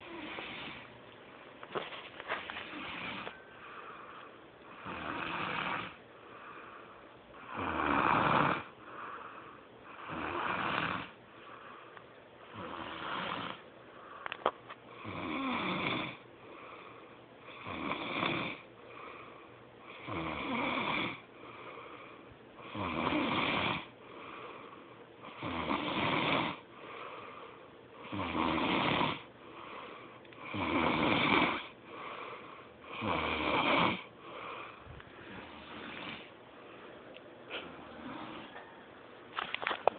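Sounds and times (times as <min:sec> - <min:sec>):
man snoring: 0:00.0 - 0:00.9, 0:02.6 - 0:03.4, 0:04.7 - 0:06.0, 0:07.4 - 0:08.8, 0:09.9 - 0:11.2, 0:12.5 - 0:13.6, 0:14.9 - 0:16.2, 0:17.4 - 0:18.7, 0:19.9 - 0:21.3, 0:22.6 - 0:23.9, 0:25.2 - 0:26.7, 0:28.0 - 0:29.3, 0:30.4 - 0:36.3, 0:37.8 - 0:38.6
soft breaths: 0:00.0 - 0:15.1, 0:16.2 - 0:17.6, 0:18.6 - 0:20.0, 0:21.2 - 0:22.8, 0:23.8 - 0:25.4, 0:26.6 - 0:28.1, 0:29.3 - 0:30.6, 0:31.5 - 0:33.1, 0:34.0 - 0:39.9.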